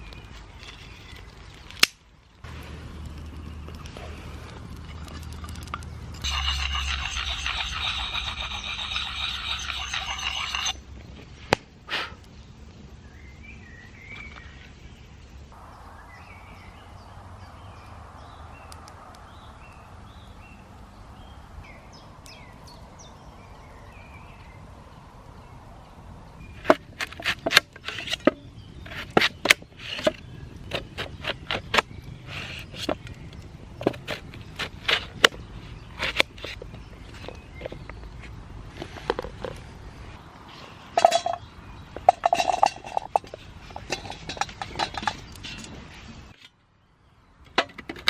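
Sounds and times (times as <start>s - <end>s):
faint birdsong: 0.0s - 1.8s, 5.8s - 48.0s
sharp cracks and snaps: 0.0s - 6.2s.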